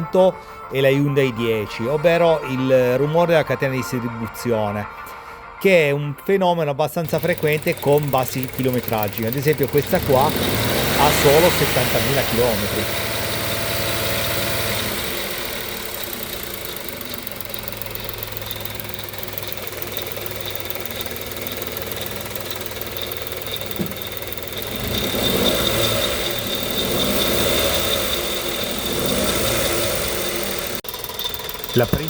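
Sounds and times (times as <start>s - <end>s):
engine running: 7.0s - 32.0s
metallic ticking: 7.0s - 32.0s.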